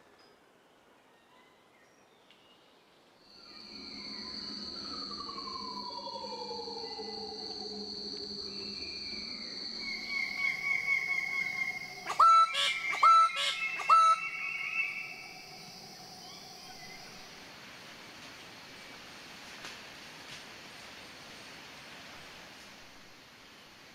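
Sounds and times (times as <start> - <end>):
high insect trilling: 3.3 - 17.4.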